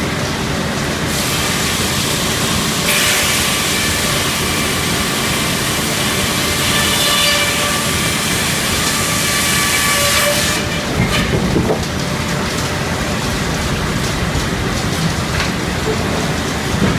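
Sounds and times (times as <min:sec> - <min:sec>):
sawmill machinery rumbling: 0:00.0 - 0:16.9
circular saw blade cutting log: 0:01.1 - 0:11.6
knocks and clatter: 0:14.0 - 0:16.9.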